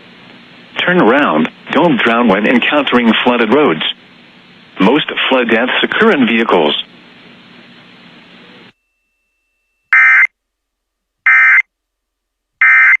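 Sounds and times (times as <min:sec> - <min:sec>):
faint radio hiss: 0:00.0 - 0:08.8
short data tone bursts: 0:09.9 - 0:10.3, 0:11.3 - 0:11.6, 0:12.6 - 0:13.0.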